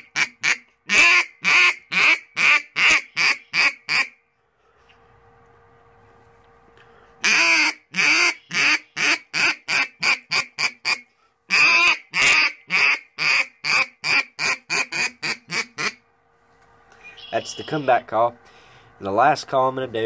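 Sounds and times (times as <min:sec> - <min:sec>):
duck call quacks: 0:00.0 - 0:04.2, 0:07.2 - 0:16.0.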